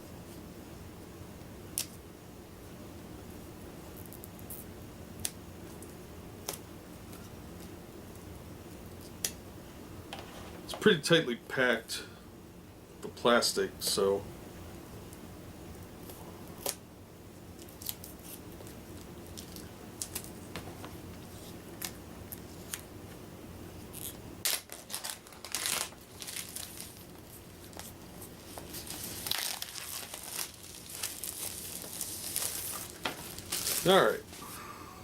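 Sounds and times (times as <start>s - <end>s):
plastic wrap tearing and crinkling: 23.9s - 34.2s.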